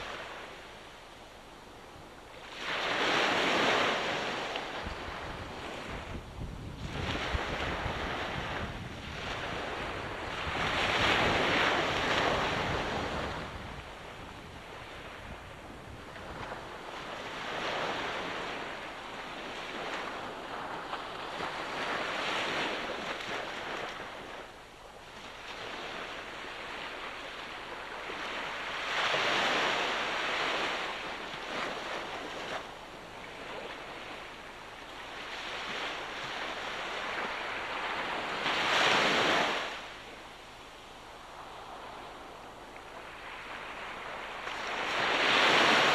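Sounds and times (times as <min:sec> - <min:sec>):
ocean waves washing ashore: 0:00.0 - 0:45.9
wind buffeting microphone: 0:03.1 - 0:18.7.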